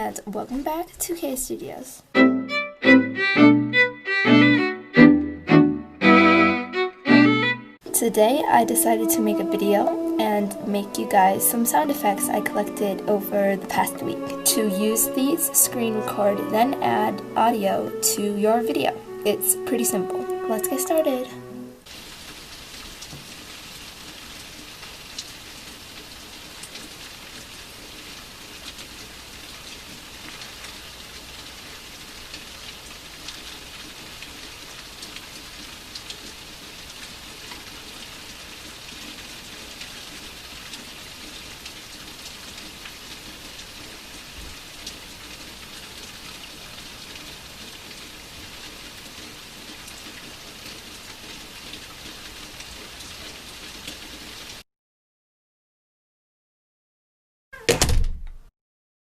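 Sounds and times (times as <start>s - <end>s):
steady rain hiss: 0.0s - 54.6s
raindrop taps: 22.9s - 23.4s.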